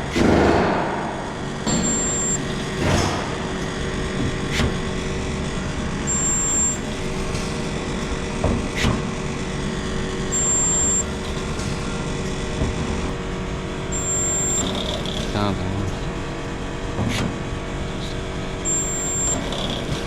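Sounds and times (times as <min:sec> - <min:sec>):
spot welder humming: 0:00.1 - 0:13.2, 0:13.9 - 0:15.4, 0:18.6 - 0:20.0
short high-pitched whine: 0:01.0 - 0:03.4, 0:06.1 - 0:07.4, 0:10.3 - 0:12.0, 0:13.9 - 0:14.8, 0:18.7 - 0:19.4.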